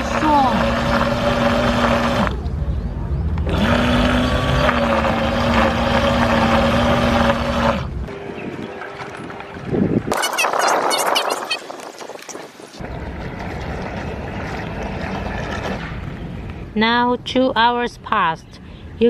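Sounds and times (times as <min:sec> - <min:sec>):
electric motors whining: 0:00.0 - 0:02.4, 0:03.4 - 0:10.6.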